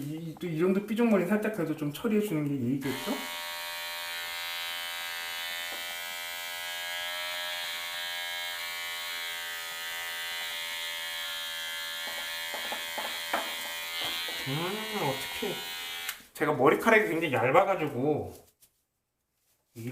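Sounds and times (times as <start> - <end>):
electric hair clipper buzzing: 2.8 - 16.2.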